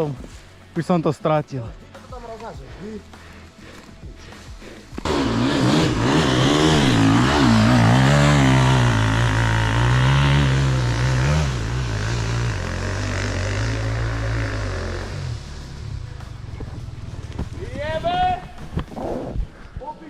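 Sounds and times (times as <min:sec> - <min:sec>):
motocross engine revving: 0:05.0 - 0:17.4.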